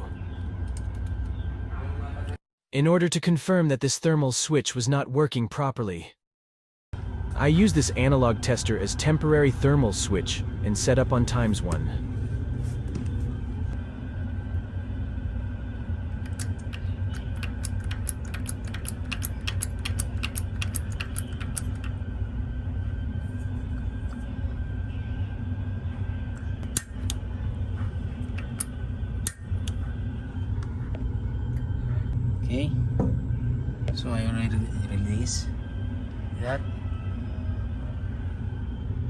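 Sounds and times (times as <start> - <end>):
steady low rumble: 7.0 - 39.0
sharp clicks: 16.2 - 22.0.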